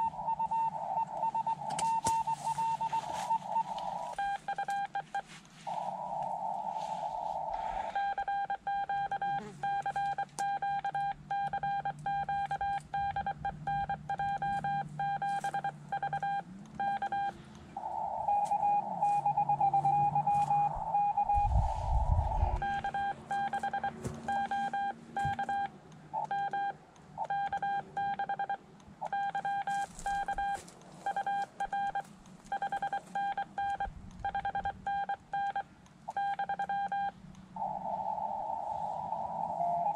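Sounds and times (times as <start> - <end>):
receiver hiss: 0.0 - 10.0
morse code beeps: 0.0 - 38.2.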